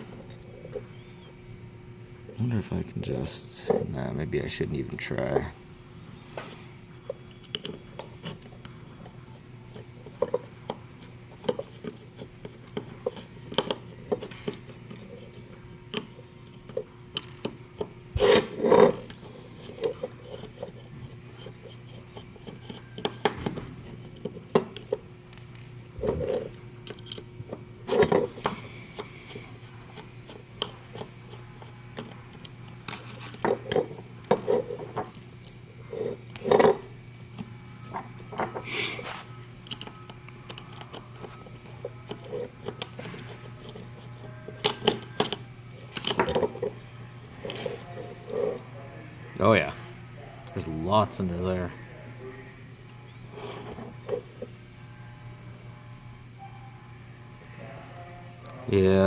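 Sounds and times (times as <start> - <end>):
faint steady hum: 0.0 - 59.0
tools and parts clicking and scraping: 6.4 - 48.7, 53.2 - 54.5.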